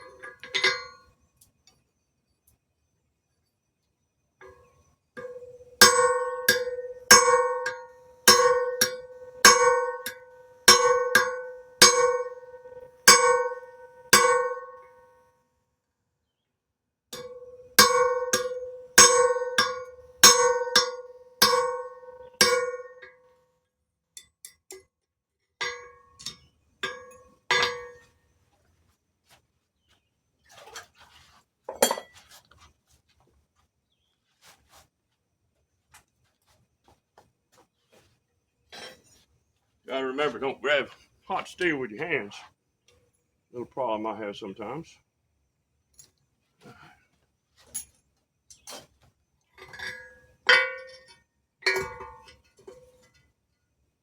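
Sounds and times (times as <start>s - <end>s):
hammer blows on anvil: 5.2s - 14.9s.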